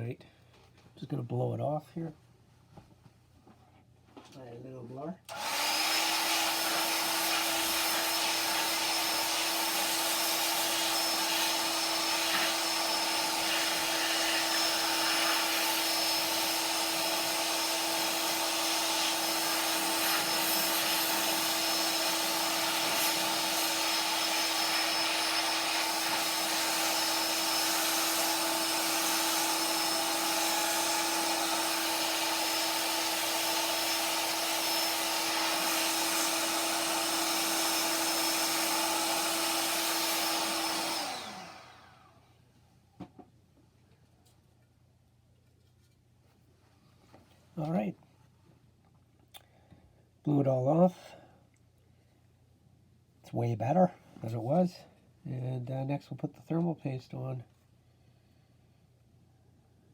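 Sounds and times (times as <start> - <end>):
electric air blower running: 5.3 - 42.2.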